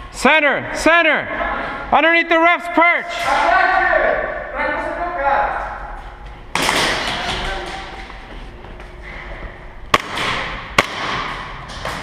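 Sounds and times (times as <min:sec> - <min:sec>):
airsoft gun shots: 0:09.9 - 0:11.6.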